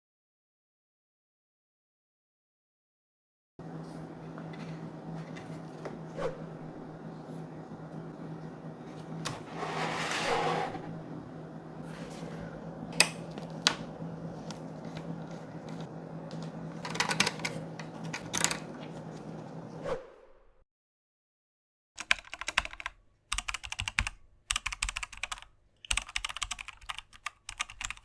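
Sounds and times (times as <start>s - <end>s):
steady low hum: 3.6s - 19.8s
clicks and rattles of handled parts: 16.8s - 18.7s.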